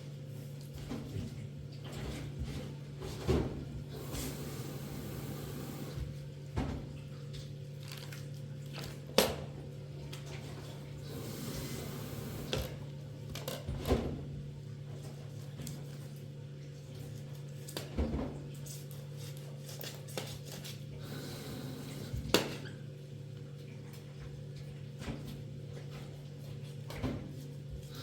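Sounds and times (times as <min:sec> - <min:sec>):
steady low hum: 0:00.0 - 0:06.7, 0:09.6 - 0:13.4.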